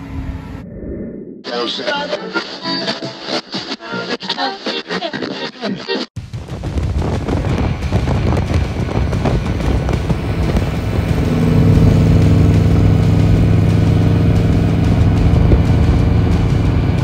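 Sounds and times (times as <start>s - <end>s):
car engine running: 6.7s - 17.0s.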